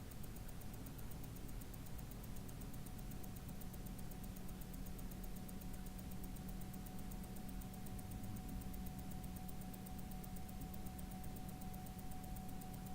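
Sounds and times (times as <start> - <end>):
low steady hum: 0.0 - 12.9
watch ticking: 0.0 - 12.9.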